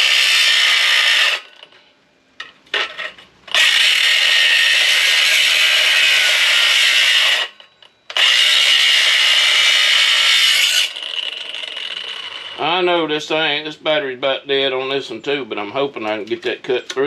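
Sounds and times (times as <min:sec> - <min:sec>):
battery-powered cutting tool: 0:00.0 - 0:01.7, 0:03.5 - 0:12.6.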